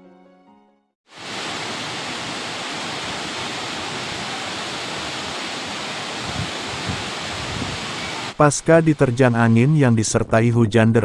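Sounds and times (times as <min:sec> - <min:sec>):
music: 0:00.0 - 0:01.0
steady outdoor rushing noise: 0:01.1 - 0:09.2.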